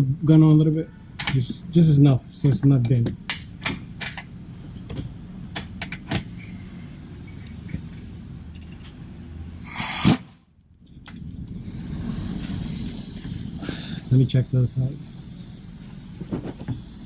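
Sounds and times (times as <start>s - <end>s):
tools clicking and knocking: 1.2s - 1.6s, 2.5s - 6.4s, 7.2s - 9.0s.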